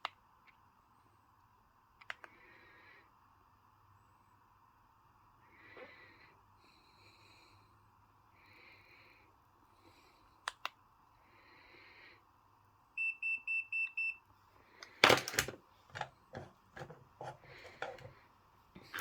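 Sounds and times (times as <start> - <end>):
handling noise clatter: 15.0 - 18.1.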